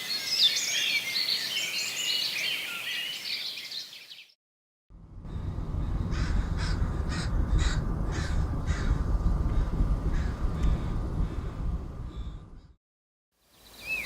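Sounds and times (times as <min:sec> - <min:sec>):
steady low rumble: 0:04.9 - 0:12.8
crow cawing: 0:06.1 - 0:09.0.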